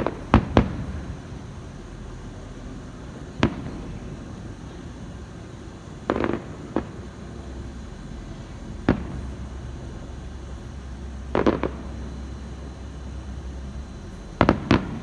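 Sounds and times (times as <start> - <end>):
firework bangs: 0.0 - 15.0
firework crackling: 0.0 - 15.0.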